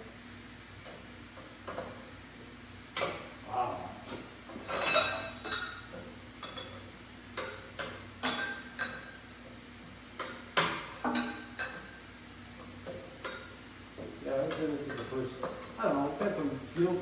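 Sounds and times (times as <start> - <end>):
metal tools clinking: 4.7 - 5.8.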